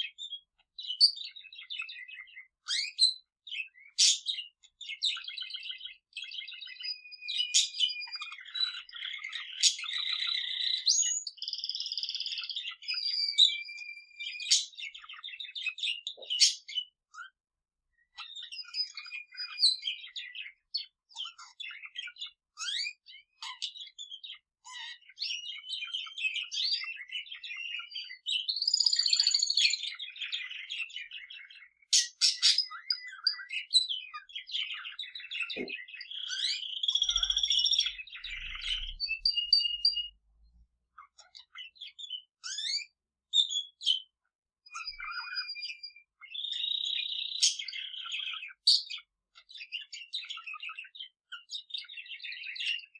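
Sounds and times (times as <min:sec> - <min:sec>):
birds chirping and trilling: 0:00.0 - 0:52.9.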